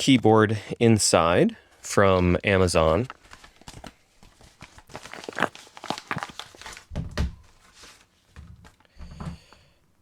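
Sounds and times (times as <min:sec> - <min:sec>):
packaging being handled: 0:05.0 - 0:06.7.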